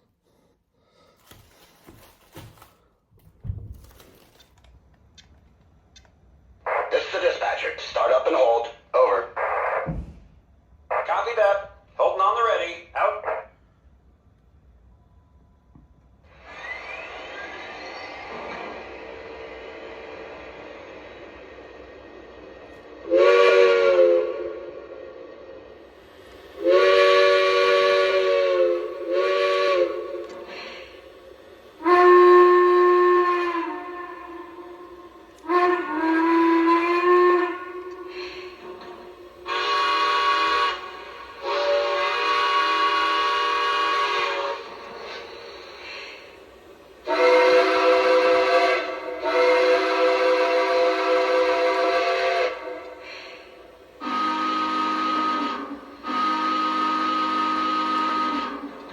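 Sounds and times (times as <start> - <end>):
steam hissing: 16.2 - 58.9
steam whistle blasts: 16.3 - 46.4, 47.0 - 58.9.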